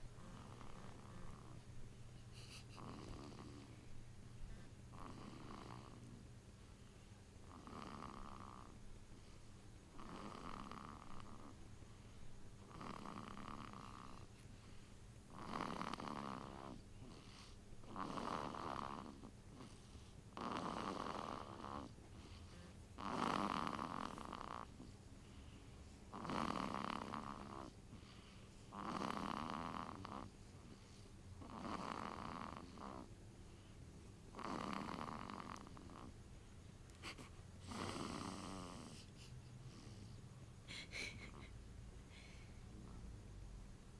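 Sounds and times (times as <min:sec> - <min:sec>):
baby snoring: 0:00.2 - 0:01.6, 0:02.4 - 0:03.8, 0:04.9 - 0:06.2, 0:07.4 - 0:08.8, 0:09.9 - 0:11.6, 0:12.6 - 0:14.3, 0:15.3 - 0:24.9, 0:26.1 - 0:33.1, 0:34.3 - 0:36.2, 0:37.0 - 0:39.1.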